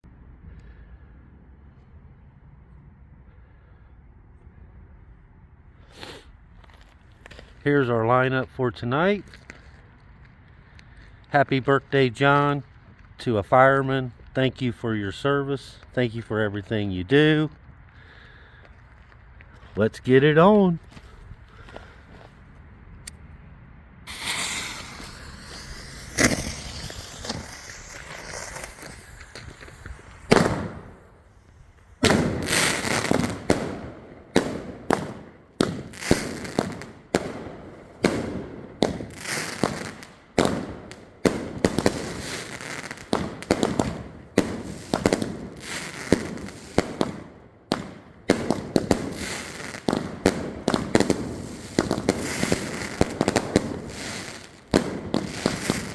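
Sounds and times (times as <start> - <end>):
firework bangs: 24.1 - 55.9
fireworks crackling: 24.1 - 55.9
rapid firework shots: 24.1 - 55.9.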